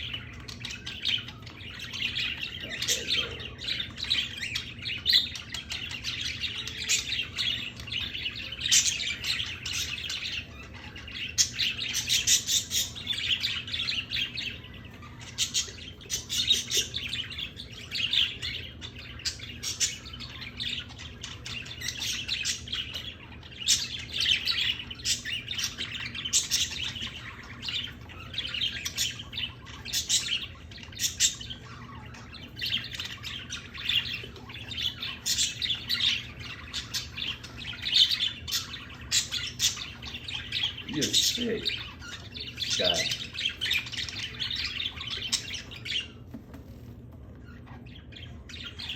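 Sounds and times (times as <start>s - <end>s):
pet birds chirping: 0.0s - 48.9s.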